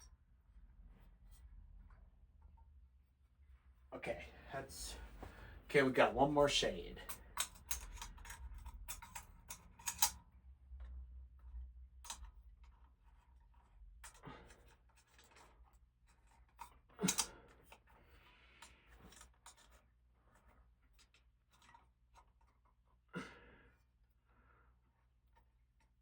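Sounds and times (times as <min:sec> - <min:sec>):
small clicks and scraping: 0:07.0 - 0:26.0.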